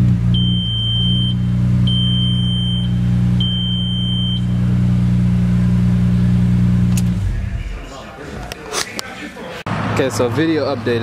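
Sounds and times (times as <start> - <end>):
car engine idling: 0.0 - 8.6
long high beeps: 0.3 - 4.6.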